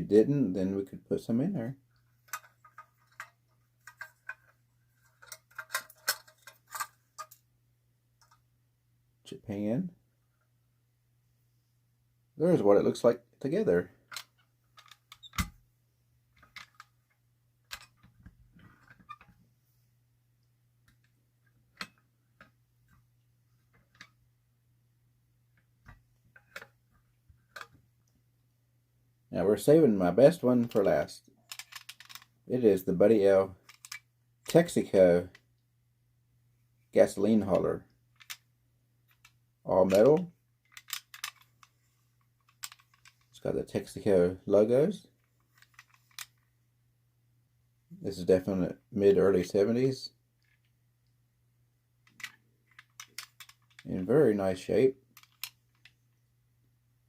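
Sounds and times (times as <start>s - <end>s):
low steady hum: 0.0s - 57.0s
handling clicks and knocks: 1.9s - 7.5s, 13.9s - 15.6s, 16.3s - 19.4s, 20.8s - 24.2s, 25.5s - 28.2s, 30.6s - 32.4s, 33.5s - 35.4s, 39.1s - 43.4s, 45.2s - 46.5s, 52.0s - 54.0s, 55.0s - 56.2s
metal toy truck clicking: 2.2s - 7.4s, 31.5s - 32.3s, 33.6s - 34.7s, 39.9s - 41.6s, 42.5s - 43.2s, 52.1s - 53.9s, 55.1s - 55.9s.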